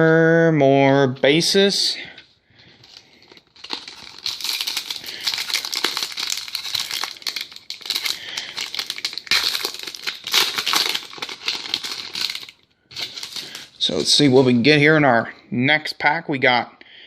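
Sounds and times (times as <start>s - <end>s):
plastic wrapper crinkling: 2.8s - 14.4s.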